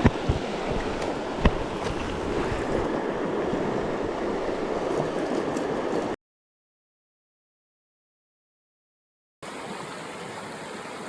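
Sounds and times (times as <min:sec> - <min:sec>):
stream water rushing: 0:00.0 - 0:06.2, 0:09.4 - 0:11.0.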